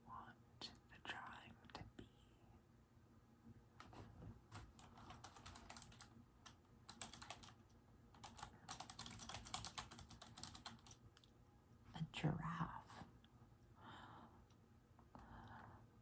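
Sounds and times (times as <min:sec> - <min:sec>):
mechanical keyboard clicking: 0:04.5 - 0:07.6, 0:08.2 - 0:11.3.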